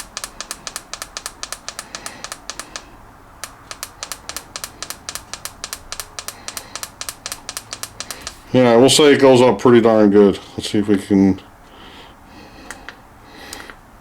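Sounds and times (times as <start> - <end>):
tire inflator rapid clicking: 0.0 - 8.5.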